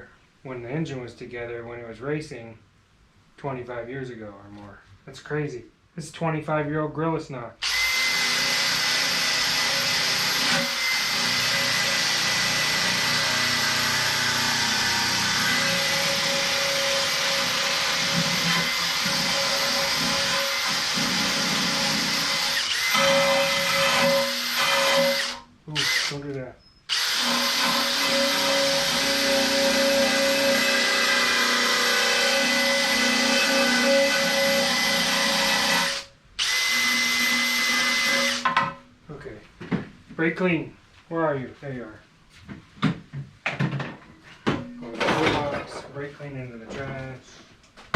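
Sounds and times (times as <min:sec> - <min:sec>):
power tool motor whining: 0:07.6 - 0:26.2.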